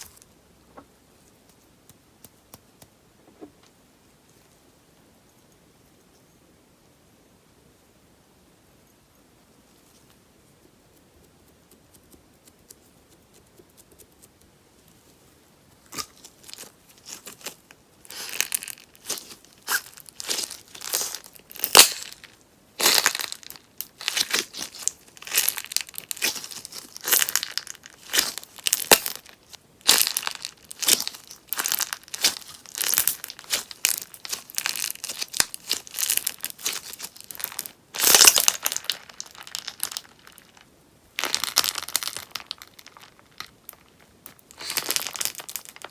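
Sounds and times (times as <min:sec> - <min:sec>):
slime crackling and popping: 0:15.9 - 0:40.6, 0:41.2 - 0:45.9.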